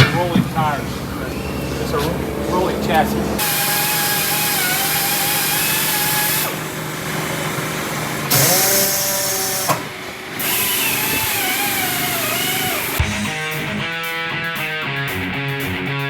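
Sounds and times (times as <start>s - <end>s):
power tool motor whining: 0.9s - 13.2s.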